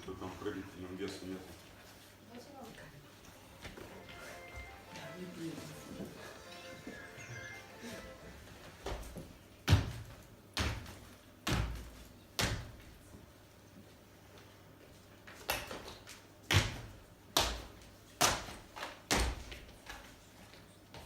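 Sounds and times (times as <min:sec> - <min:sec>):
feet landing jumps on floor: 0:08.8 - 0:13.1, 0:15.3 - 0:20.1.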